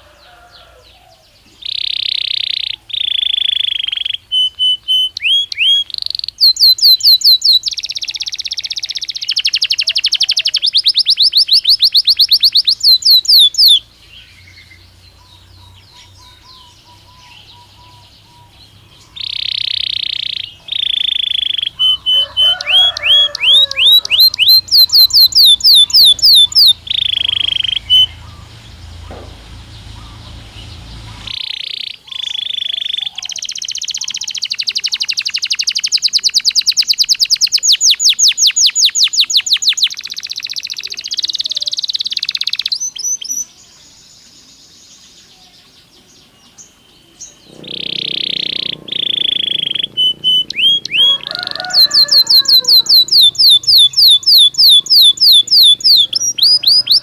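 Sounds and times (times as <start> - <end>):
canary singing: 0.0 - 57.0.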